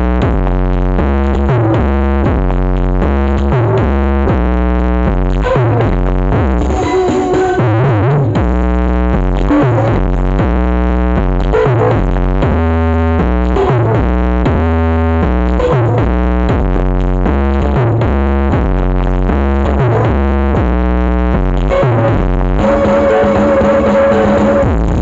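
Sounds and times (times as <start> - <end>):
loud electronic dance music: 0.0 - 25.0.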